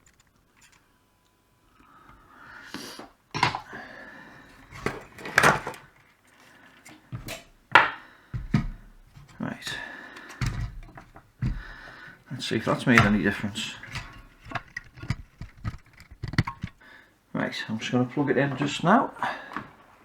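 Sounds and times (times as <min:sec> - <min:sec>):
tools knocking on workbench: 0:07.2 - 0:09.3, 0:10.4 - 0:12.0, 0:13.0 - 0:16.8.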